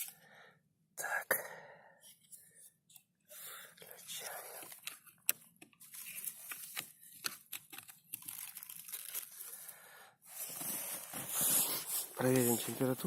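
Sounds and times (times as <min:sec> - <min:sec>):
material crinkling and crackling: 0:04.1 - 0:09.7.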